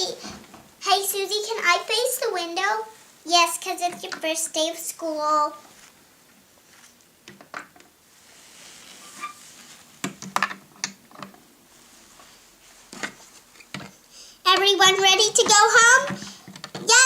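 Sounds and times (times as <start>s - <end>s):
plastic toys clicking and knocking: 10.0s - 11.4s, 13.7s - 16.9s.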